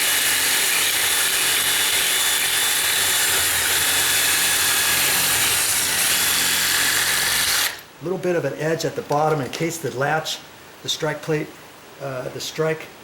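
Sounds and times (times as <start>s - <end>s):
power drill grinding metal: 0.0s - 7.9s.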